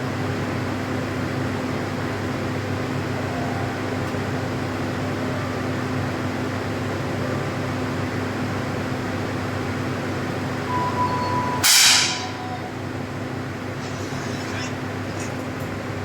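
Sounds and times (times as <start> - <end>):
background hum: 10.5 - 16.0
steady beep: 10.7 - 13.0.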